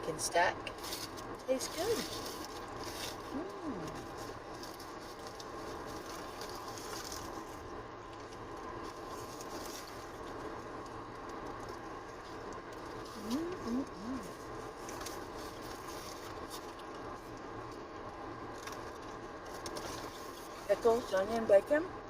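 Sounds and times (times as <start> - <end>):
steady background hum: 0.0 - 22.0
person chewing: 2.2 - 17.8
person humming mm: 3.3 - 4.0, 13.2 - 14.4.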